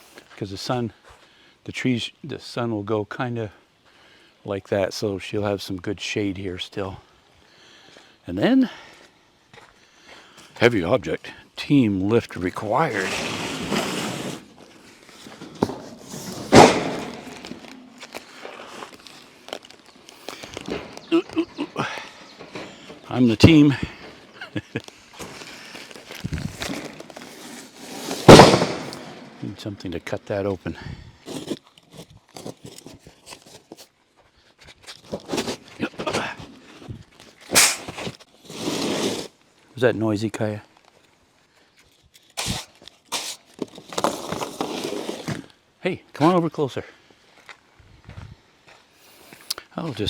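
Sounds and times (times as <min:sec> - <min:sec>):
heavy box thudding down: 0:15.2 - 0:17.8, 0:28.1 - 0:29.2
packaging being ripped open: 0:37.5 - 0:38.9.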